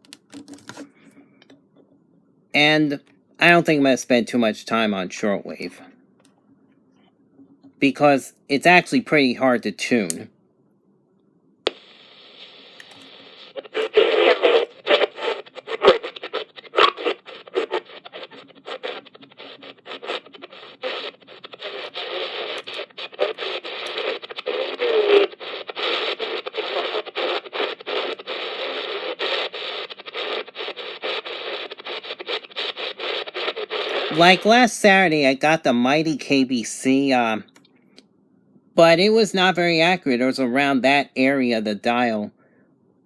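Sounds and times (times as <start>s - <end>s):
radio static hiss with crackles: 2.5s - 6.0s, 7.0s - 10.3s, 11.6s - 37.6s, 38.8s - 42.4s.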